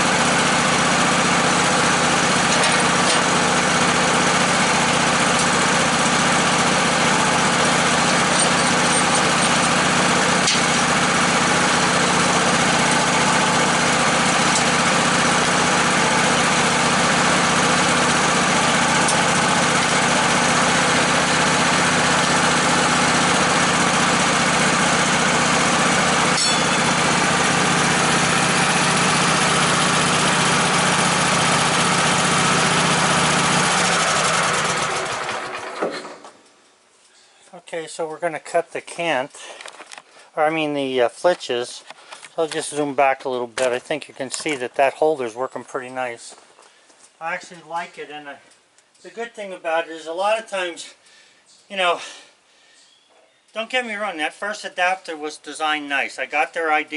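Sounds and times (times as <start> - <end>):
sawmill engine running: 0.0 - 36.4.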